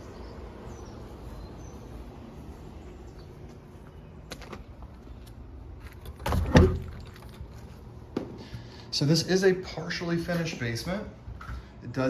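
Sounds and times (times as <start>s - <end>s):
door opening knock and rattle: 6.2s - 7.2s.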